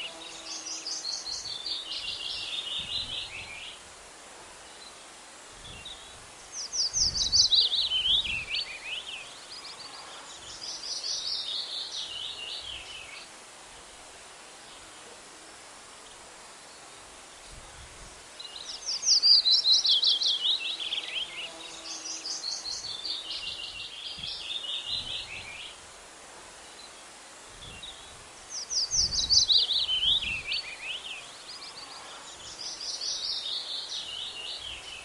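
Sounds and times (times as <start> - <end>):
outdoor hiss: 0.0 - 35.0
songbird trilling: 28.6 - 31.0.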